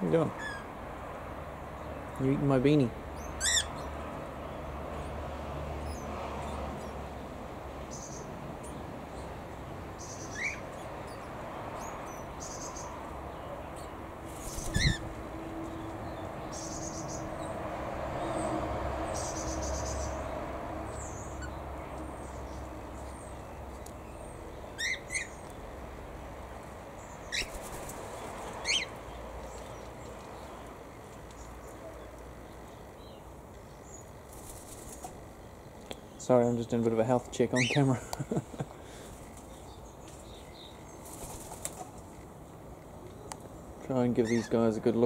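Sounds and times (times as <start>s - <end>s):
birds chirping: 1.8s - 5.2s, 5.8s - 18.5s, 19.1s - 42.2s, 43.1s - 45.0s
faint bird twittering: 13.8s - 15.1s.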